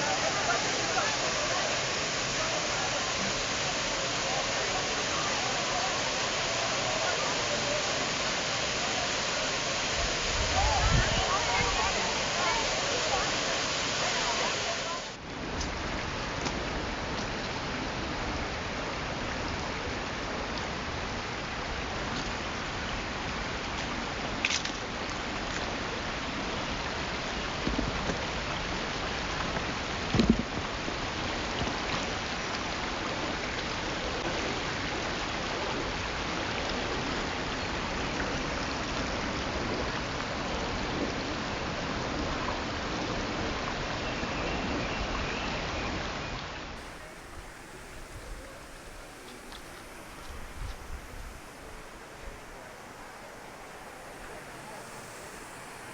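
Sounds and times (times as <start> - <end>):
flowing water: 0.0 - 23.2, 46.7 - 55.9.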